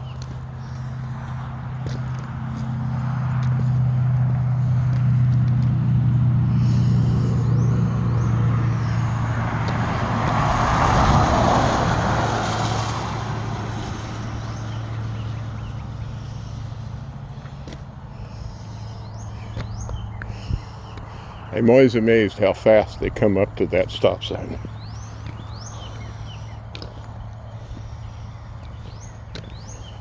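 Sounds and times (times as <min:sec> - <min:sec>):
car passing on wet road: 0:07.8 - 0:15.8.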